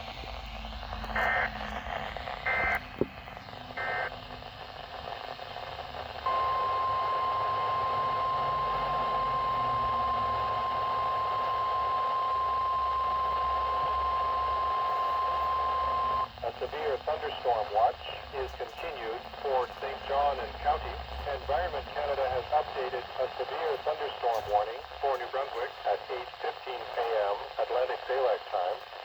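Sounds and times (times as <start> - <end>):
steady alarm tone: 6.2 - 16.3.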